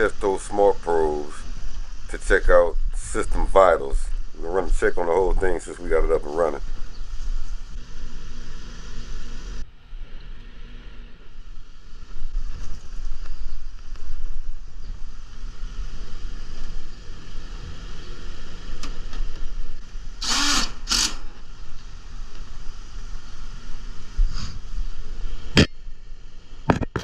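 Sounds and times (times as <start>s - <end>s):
air conditioner unit humming: 0.0s - 26.6s
short hissing bursts: 20.1s - 25.5s.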